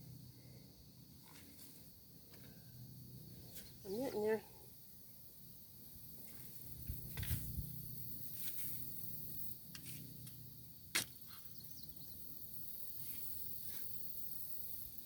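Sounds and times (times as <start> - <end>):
shovel thudding in soil: 10.9 - 11.4.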